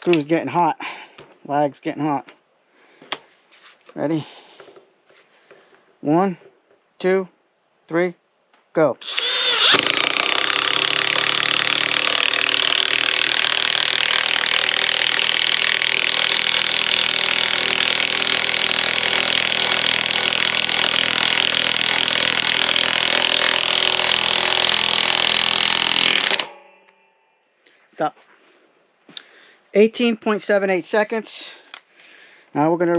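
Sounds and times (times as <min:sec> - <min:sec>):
impact wrench hammering: 0:09.0 - 0:27.2.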